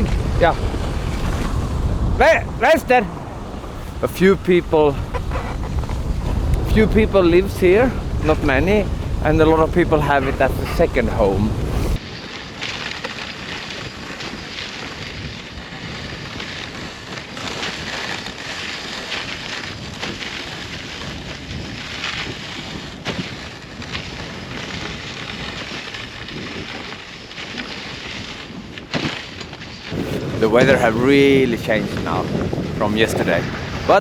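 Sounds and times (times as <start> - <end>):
wind rushing over microphone: 0.0 - 12.0, 29.8 - 34.0.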